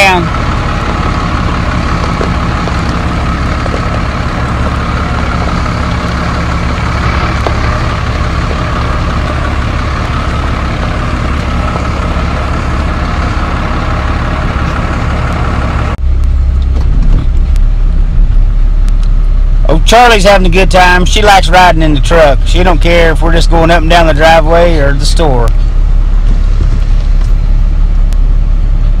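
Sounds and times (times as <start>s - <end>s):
tyres rolling over gravel: 0.0s - 15.9s
diesel truck engine running: 0.0s - 29.0s
low rumble: 0.0s - 29.0s.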